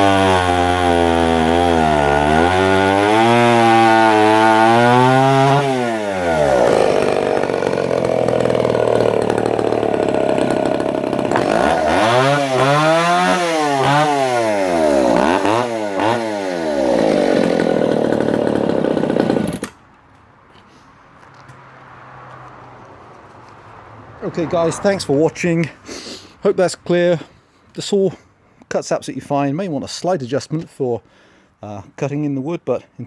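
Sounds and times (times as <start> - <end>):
chainsaw revving: 0.0 - 19.8.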